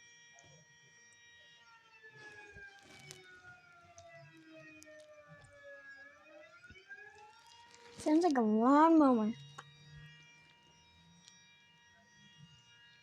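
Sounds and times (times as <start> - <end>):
faint siren wail: 1.4 - 11.4.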